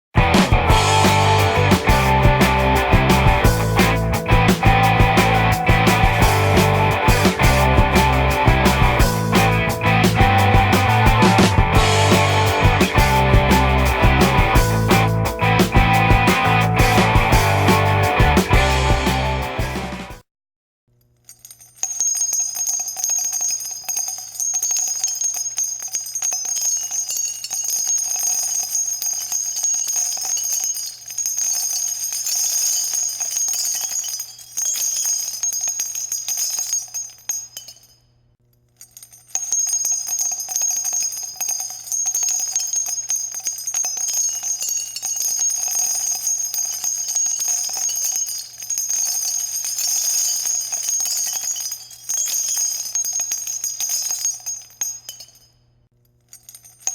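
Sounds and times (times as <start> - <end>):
glassy tinkling: 21.2 - 56.9.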